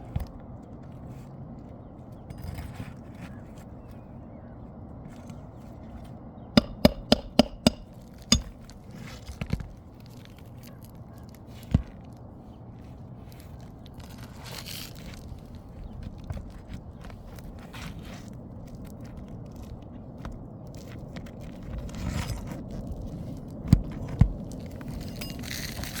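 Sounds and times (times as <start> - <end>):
hammer striking metal: 6.6 - 8.5.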